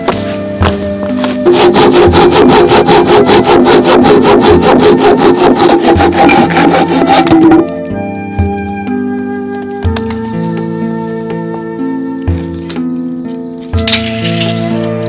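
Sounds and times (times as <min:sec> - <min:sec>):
soft background music: 0:00.0 - 0:15.0
hand saw cutting wood: 0:01.2 - 0:07.8, 0:13.7 - 0:15.0.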